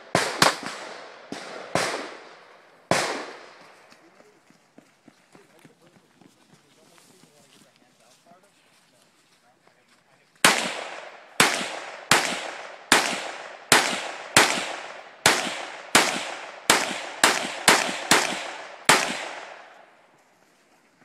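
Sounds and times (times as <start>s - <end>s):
rifle shots echoing: 0.0s - 3.8s, 10.4s - 20.0s.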